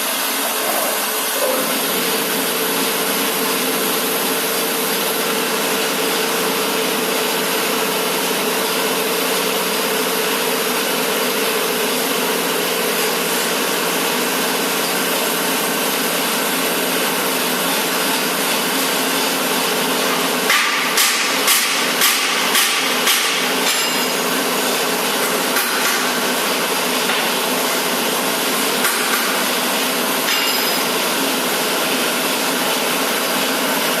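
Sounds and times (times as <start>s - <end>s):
pump and spray rushing: 0.0s - 34.0s.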